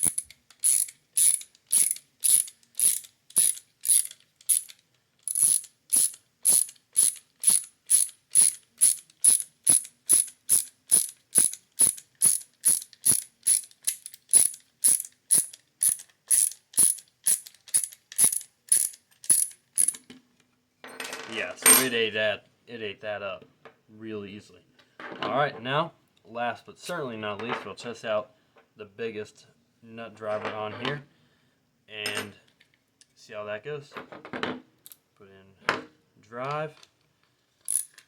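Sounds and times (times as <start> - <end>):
ratcheting nut driver clicks: 0.0 - 20.0, 37.6 - 38.0.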